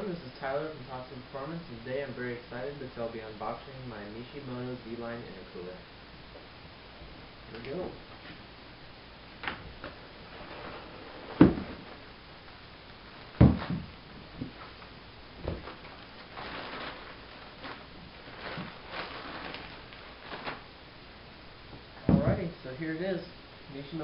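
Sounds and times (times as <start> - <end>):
cardboard rustling and scraping: 9.8 - 12.1, 15.4 - 20.6
cardboard box thumps: 11.3 - 11.8, 13.4 - 14.5.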